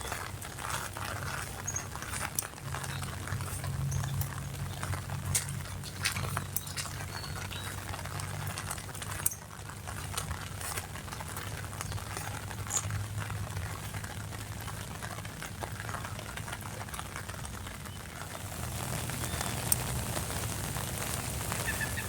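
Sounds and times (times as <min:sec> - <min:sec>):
rain drops pattering: 0:00.0 - 0:22.0
steady low hum: 0:18.4 - 0:22.0.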